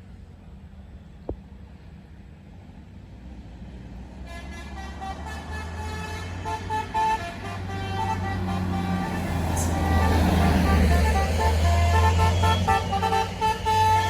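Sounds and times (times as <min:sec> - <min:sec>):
bus engine rumbling: 0:00.0 - 0:14.0
musical bus horn: 0:04.2 - 0:14.0
short loud horn blasts: 0:04.3 - 0:14.0.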